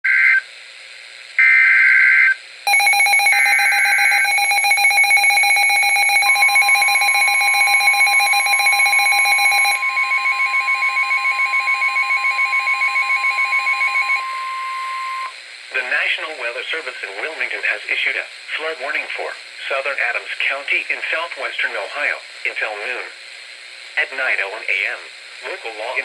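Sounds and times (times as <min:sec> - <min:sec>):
pulsing electronic alarm beep: 0:01.4 - 0:15.3
warbling digital data bursts: 0:02.7 - 0:13.7
steady attention tone: 0:02.7 - 0:16.3.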